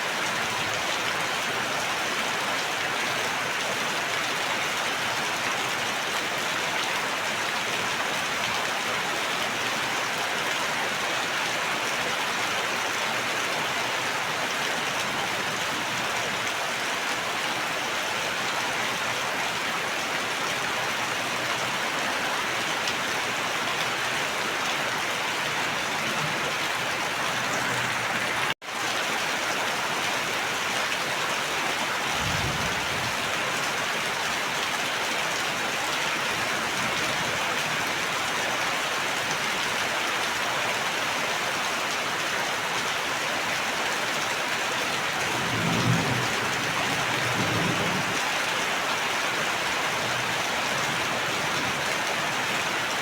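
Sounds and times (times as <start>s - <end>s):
steady rain: 0.0s - 53.0s.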